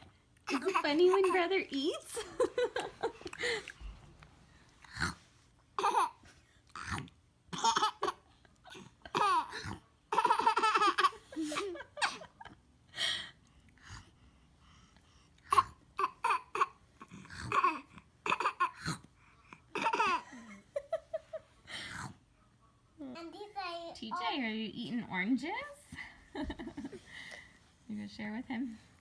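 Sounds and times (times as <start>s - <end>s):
baby laughing: 0.5s - 1.4s, 5.8s - 6.2s, 7.6s - 12.3s, 19.8s - 20.5s.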